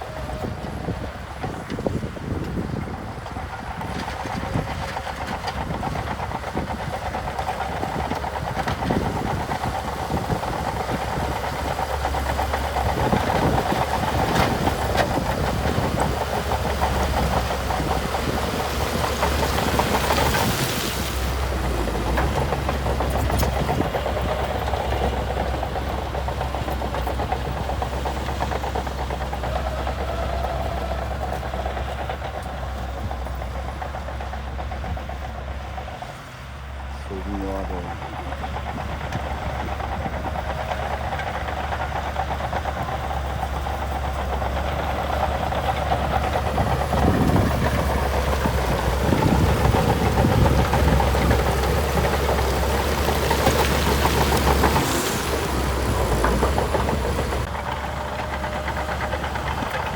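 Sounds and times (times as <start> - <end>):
diesel engine rumbling: 0.0 - 59.9.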